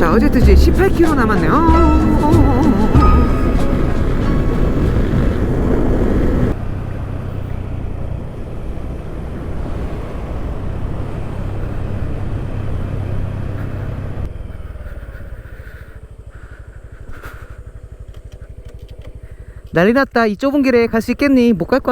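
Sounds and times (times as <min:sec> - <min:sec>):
background music: 0:00.0 - 0:06.5
motorcycle engine running: 0:00.0 - 0:21.9.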